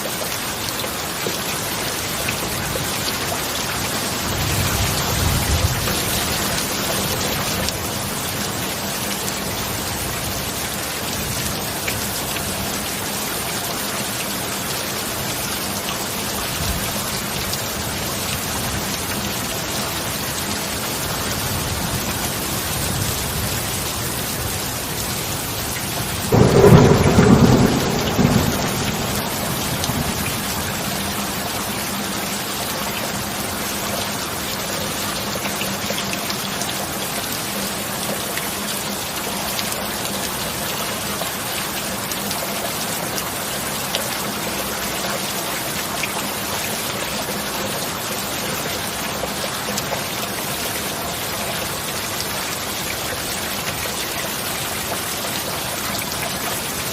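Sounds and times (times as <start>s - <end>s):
heavy rain hissing: 0.0s - 56.9s
thunderclap rumbling: 26.2s - 31.7s.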